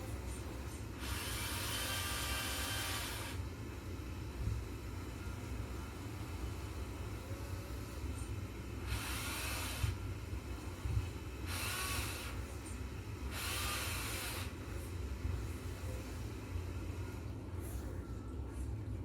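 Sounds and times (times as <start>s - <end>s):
small electric motors whining: 1.0s - 3.4s, 8.8s - 10.0s, 11.4s - 12.4s, 13.3s - 14.6s.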